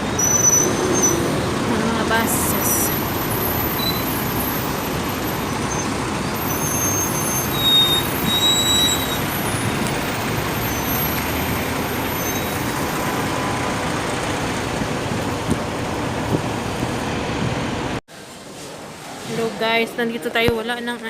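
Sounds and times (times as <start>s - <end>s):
buses passing: 0.0s - 20.0s
traffic engines and tyres: 0.0s - 21.0s.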